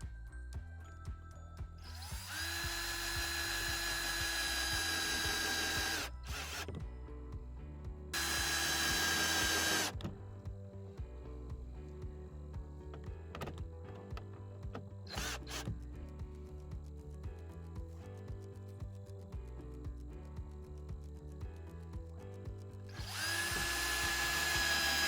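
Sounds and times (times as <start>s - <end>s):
power drill running: 1.8s - 6.8s, 8.2s - 10.0s, 15.1s - 15.8s, 22.9s - 25.0s.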